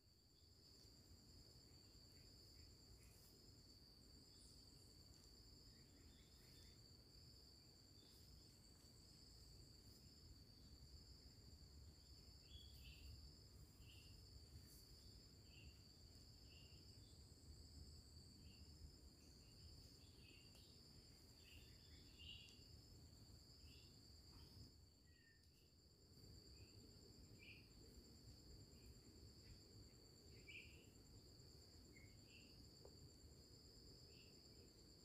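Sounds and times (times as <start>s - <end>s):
insects trilling: 0.0s - 35.0s
short insect chirps: 0.0s - 35.0s.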